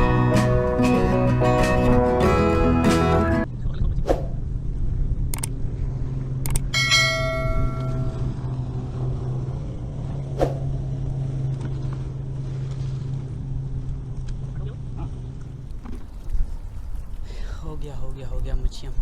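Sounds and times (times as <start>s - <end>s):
low hum: 3.4s - 19.0s
sharp clicks: 5.3s - 5.6s, 6.4s - 6.7s
bell-like chime: 6.8s - 8.4s.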